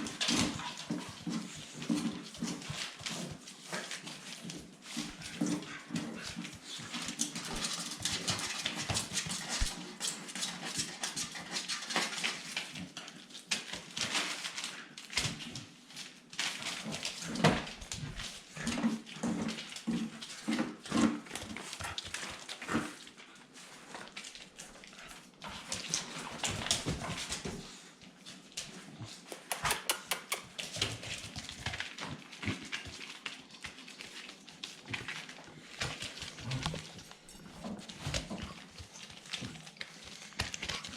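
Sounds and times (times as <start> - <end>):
puppies making short vocal sounds: 29.2 - 30.6.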